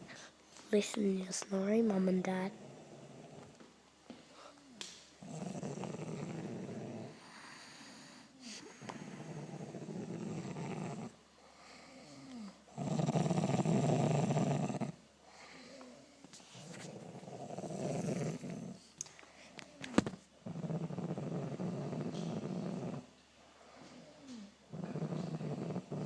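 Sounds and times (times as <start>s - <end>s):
person snoring deeply: 5.2s - 8.1s, 8.7s - 11.2s, 12.7s - 15.0s, 17.3s - 18.8s, 24.7s - 26.0s.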